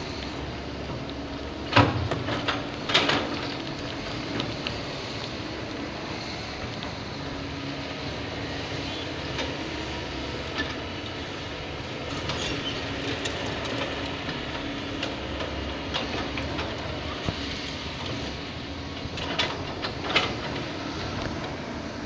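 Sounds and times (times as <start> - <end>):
excavator diesel engine running: 0.0 - 22.0
machine clanks and knocks: 1.7 - 3.7.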